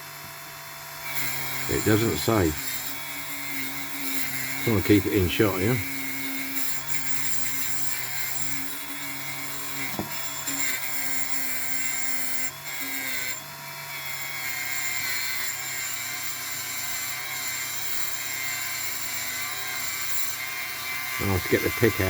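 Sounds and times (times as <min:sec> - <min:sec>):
rotary tool whining: 0:00.0 - 0:22.0
bit rubbing on metal: 0:01.1 - 0:08.7, 0:21.1 - 0:22.0.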